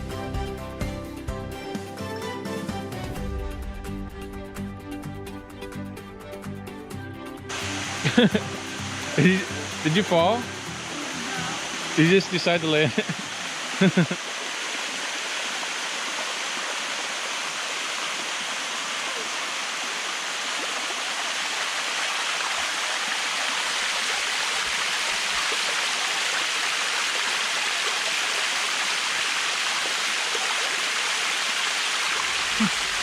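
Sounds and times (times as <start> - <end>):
waterfall rushing: 7.5 - 33.0.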